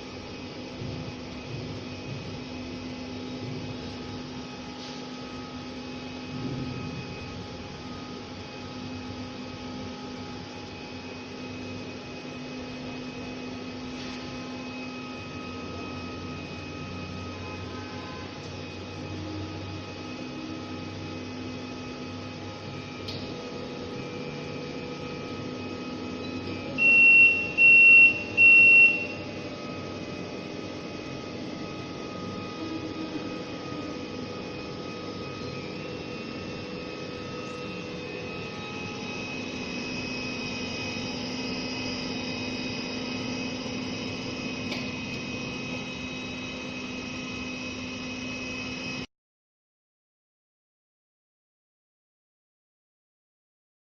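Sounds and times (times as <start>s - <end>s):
fan hum: 0.0s - 49.0s
short high buzzer beeps: 26.3s - 29.2s.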